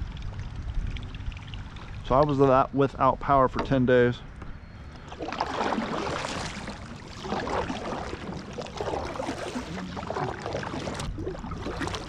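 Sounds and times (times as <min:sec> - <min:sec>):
water sloshing around kayak: 0:04.6 - 0:12.0.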